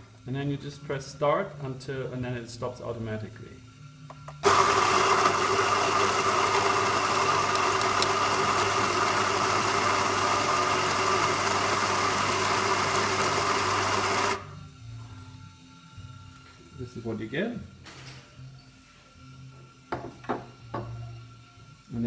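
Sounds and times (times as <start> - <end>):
electric coffee grinder running: 4.4 - 14.5.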